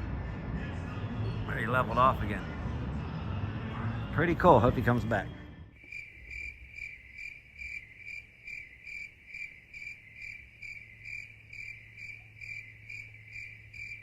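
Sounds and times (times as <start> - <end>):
cricket chirping: 5.8 - 14.0.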